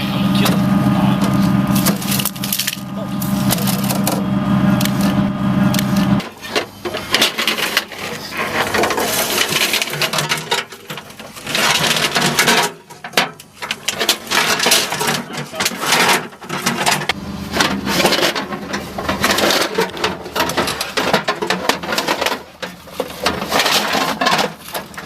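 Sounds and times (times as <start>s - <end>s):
vehicle engine droning: 0.0s - 7.2s, 16.8s - 20.9s.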